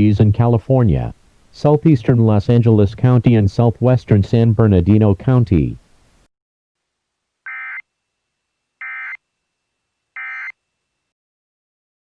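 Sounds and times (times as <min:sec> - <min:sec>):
digital data tone bursts: 0:10.2 - 0:10.5.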